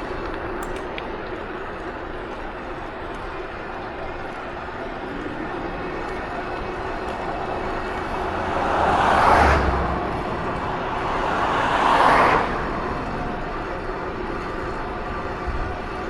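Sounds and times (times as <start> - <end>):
vehicles passing: 3.9 - 16.0.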